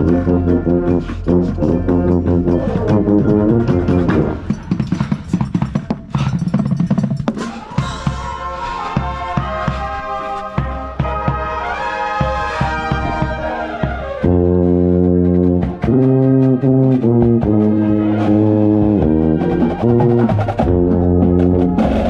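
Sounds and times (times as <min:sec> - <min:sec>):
brass line playing loud: 0:00.0 - 0:04.7, 0:08.0 - 0:22.0
drum strokes ticking: 0:00.0 - 0:08.4.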